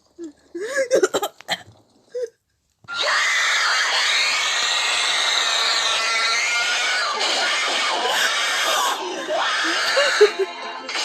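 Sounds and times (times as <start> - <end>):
screaming sound effect: 2.9 - 10.3.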